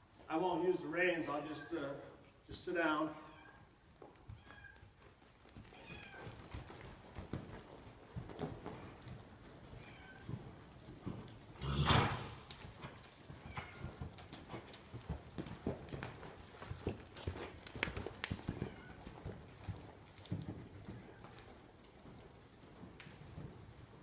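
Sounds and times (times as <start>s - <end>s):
horse hoofbeats loping: 3.6s - 24.0s.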